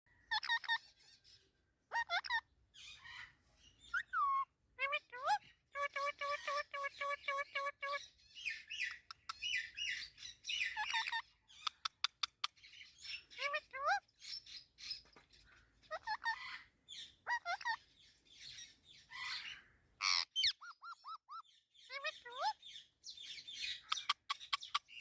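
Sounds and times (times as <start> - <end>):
parrot chirping and squawking: 0.1 - 25.0.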